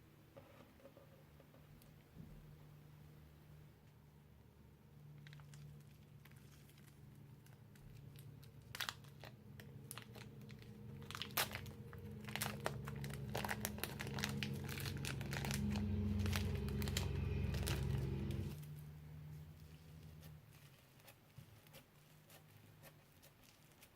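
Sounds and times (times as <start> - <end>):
low rumble: 9.5 - 20.5.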